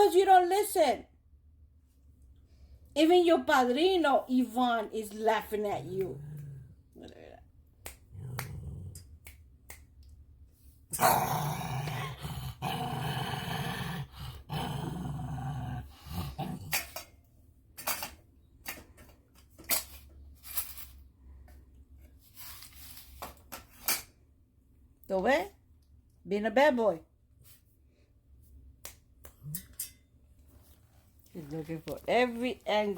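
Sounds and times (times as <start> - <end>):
dog growling: 6.0 - 7.3, 8.1 - 9.1, 10.9 - 16.9.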